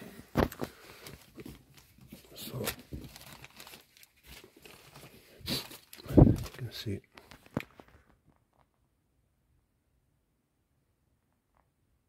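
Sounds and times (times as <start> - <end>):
rustling and crinkling: 0.0 - 8.9.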